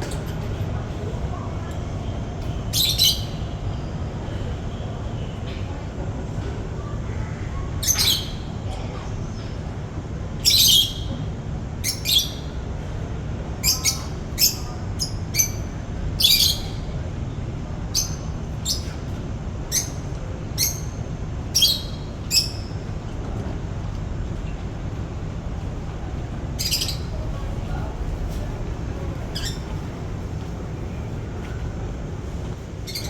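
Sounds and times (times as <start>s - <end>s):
small birds chirping: 2.6s - 4.2s, 13.6s - 17.0s, 17.9s - 19.0s, 19.7s - 22.9s, 26.5s - 27.9s, 29.3s - 29.9s
low background rumble: 12.7s - 33.0s.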